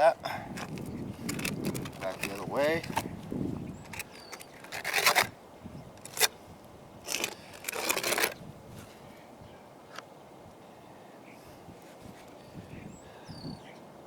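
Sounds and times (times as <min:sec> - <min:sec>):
trowel scraping mastic: 0:00.6 - 0:03.2, 0:03.8 - 0:05.3, 0:06.0 - 0:06.4, 0:07.0 - 0:08.9.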